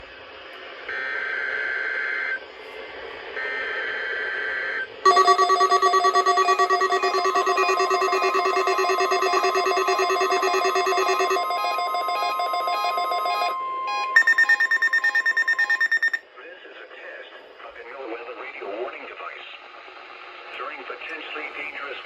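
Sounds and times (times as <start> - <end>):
warbling digital data tones: 5.1 - 13.6
electronic alert beeping: 5.1 - 16.2.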